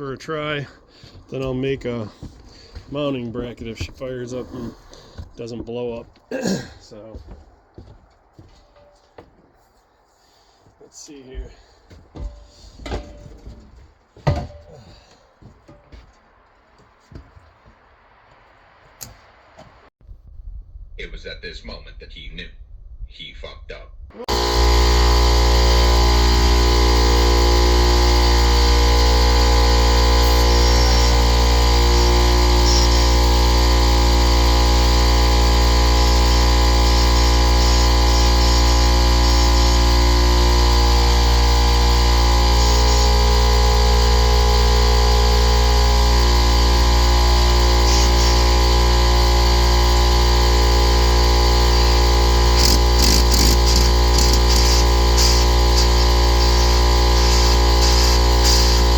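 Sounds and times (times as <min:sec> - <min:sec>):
air compressor running: 0:24.2 - 0:58.9.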